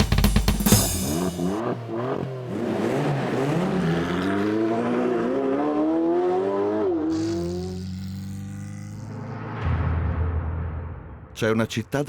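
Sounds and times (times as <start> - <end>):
racing car engine revving: 0.9 - 9.7.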